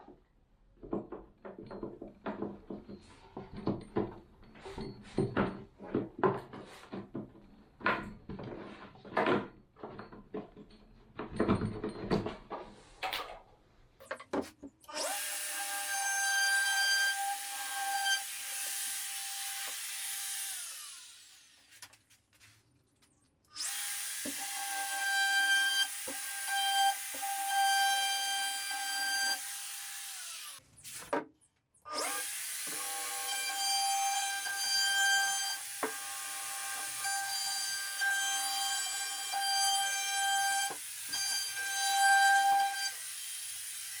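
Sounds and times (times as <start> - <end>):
knocks and clatter: 0.8 - 14.8
electric drill running: 16.7 - 21.7, 23.6 - 31.0.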